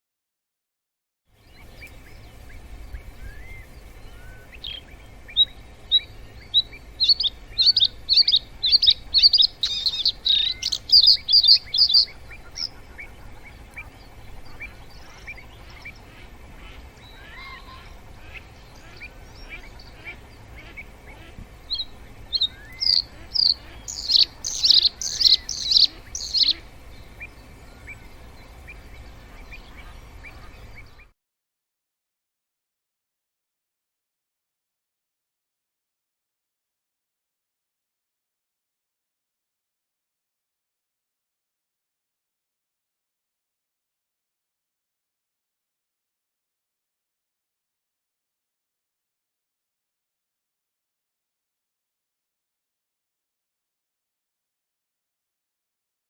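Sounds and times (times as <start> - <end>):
low steady rumble: 1.4 - 31.1
soft bird chirps: 1.4 - 31.1
bird singing: 1.4 - 31.2.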